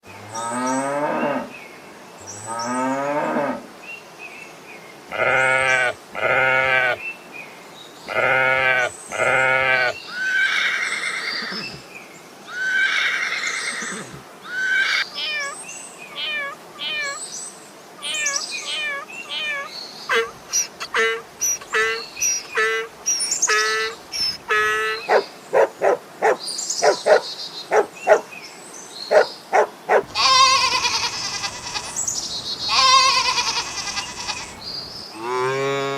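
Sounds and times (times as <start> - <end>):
farm animals calling: 5.1 - 7.0, 8.1 - 11.8, 12.5 - 15.5, 18.0 - 28.3, 29.1 - 35.9.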